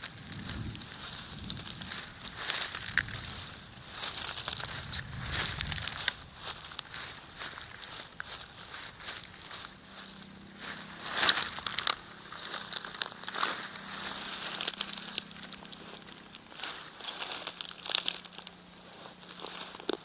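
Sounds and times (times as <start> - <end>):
footsteps crunching dry leaves: 0.0 - 20.0.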